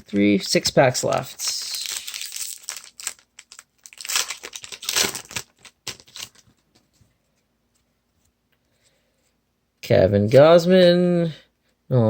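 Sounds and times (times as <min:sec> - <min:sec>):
wrapper rustling: 0:00.0 - 0:07.1.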